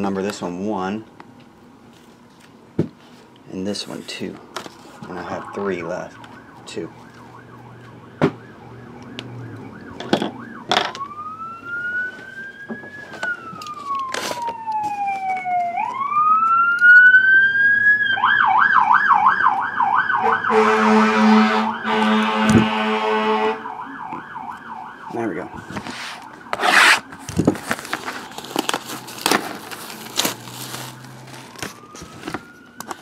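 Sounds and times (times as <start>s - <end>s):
siren wailing: 4.1s - 33.0s
siren fast warbling yelp: 4.8s - 12.6s, 13.3s - 27.2s
buzzy horn blast: 20.2s - 23.7s.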